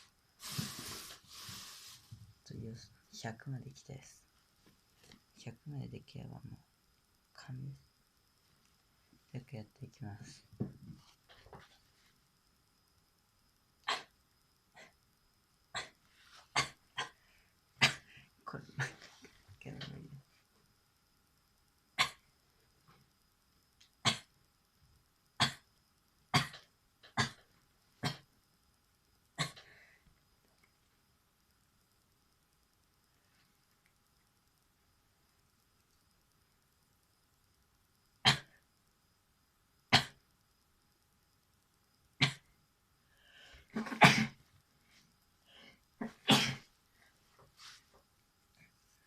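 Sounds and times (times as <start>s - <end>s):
person sneezing: 13.9s - 14.1s, 15.8s - 17.2s, 17.8s - 18.2s, 38.3s - 38.5s, 40.0s - 40.2s, 43.7s - 44.4s, 46.0s - 46.7s.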